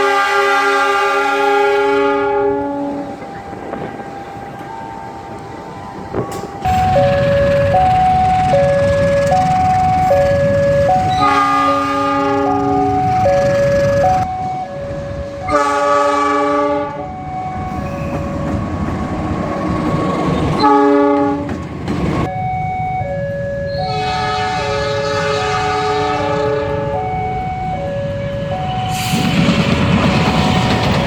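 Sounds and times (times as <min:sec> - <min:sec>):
locomotive air horn blasts: 0:00.0 - 0:03.2, 0:08.4 - 0:14.2, 0:15.4 - 0:18.2, 0:20.6 - 0:21.6, 0:23.7 - 0:27.0
train rumble: 0:00.0 - 0:31.0.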